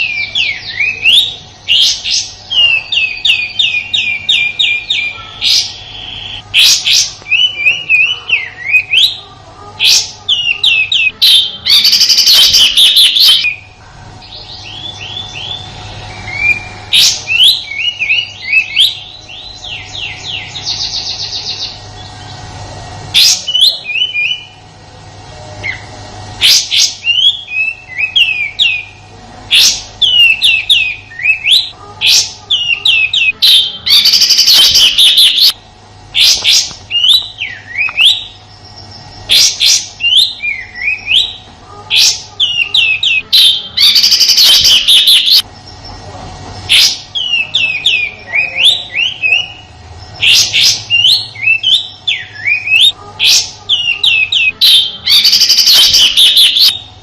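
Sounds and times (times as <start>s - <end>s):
bird chirping and rattling: 9.8s - 13.7s, 29.5s - 35.5s, 36.1s - 46.0s, 46.6s - 56.8s.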